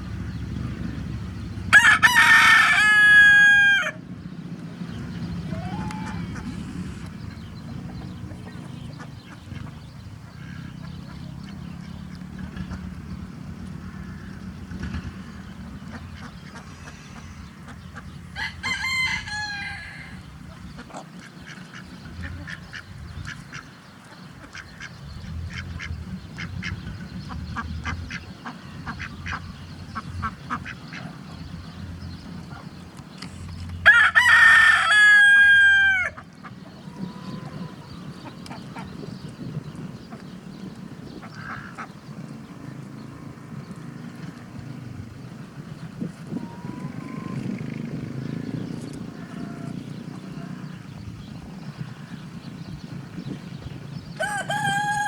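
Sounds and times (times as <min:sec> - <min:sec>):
rooster crowing: 0:01.7 - 0:04.0, 0:05.5 - 0:06.6, 0:18.4 - 0:20.3, 0:33.8 - 0:36.2, 0:54.2 - 0:55.0
hens clucking: 0:05.0 - 0:13.0, 0:13.6 - 0:31.5, 0:34.1 - 0:40.4, 0:46.0 - 0:47.9, 0:49.0 - 0:50.8.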